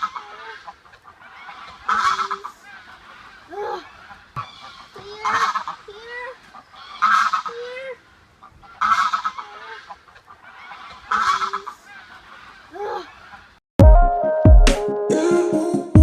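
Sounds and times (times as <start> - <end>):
loud harsh bird calls: 0.0 - 13.5
quieter lower bird calls: 0.0 - 13.6.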